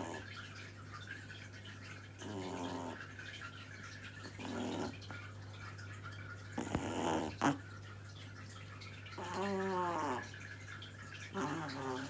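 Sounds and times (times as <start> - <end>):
puppy snoring softly: 6.6 - 7.6.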